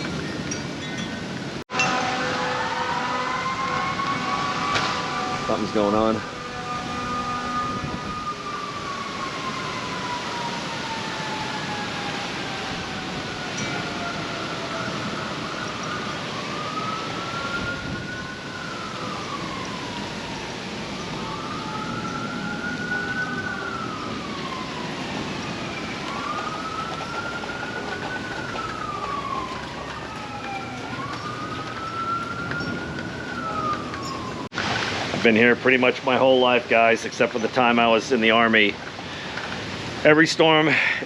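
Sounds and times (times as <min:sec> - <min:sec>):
sirens wailing: 0:00.0 - 0:41.0
fainter second siren: 0:01.7 - 0:34.6.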